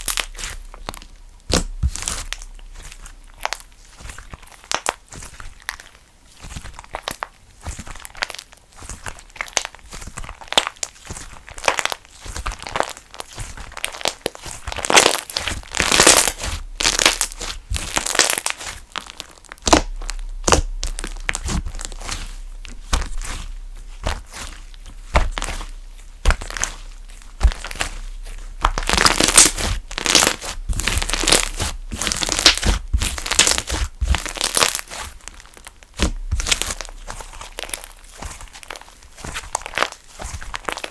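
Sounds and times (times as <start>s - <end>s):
slime crackling pops: 0.0s - 2.5s, 4.3s - 5.0s, 13.7s - 23.4s, 24.0s - 40.9s.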